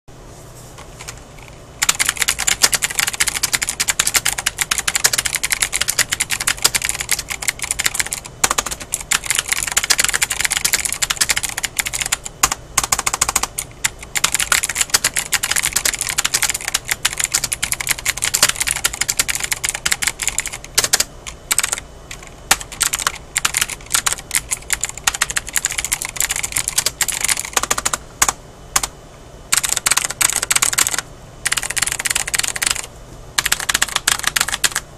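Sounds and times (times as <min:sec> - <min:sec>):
clicky mechanical keyboard typing: 0:01.0 - 0:28.9, 0:29.5 - 0:34.9.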